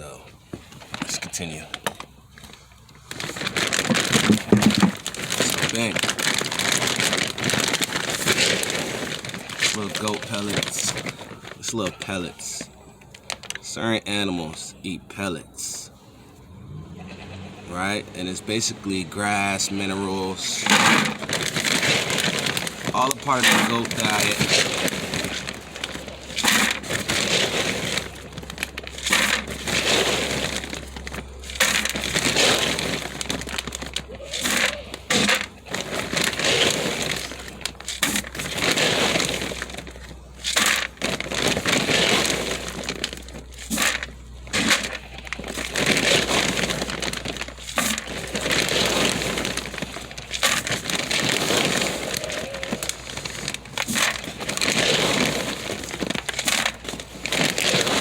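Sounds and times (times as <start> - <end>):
feed pellets crunching and rattling: 0.0 - 14.7, 17.7 - 58.0.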